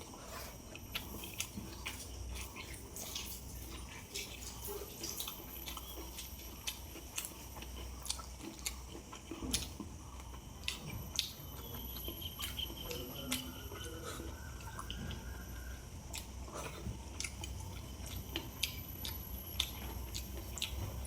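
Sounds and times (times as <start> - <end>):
person chewing: 0.0 - 21.0
wet mouth clicks and smacks: 0.9 - 7.4.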